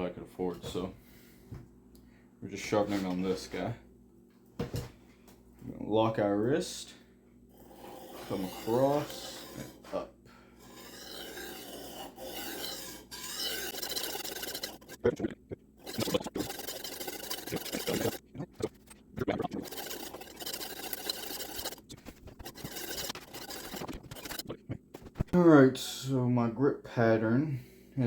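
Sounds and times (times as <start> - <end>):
knife scraping on sharpening stone: 7.6 - 9.8, 10.6 - 15.0, 22.4 - 24.4.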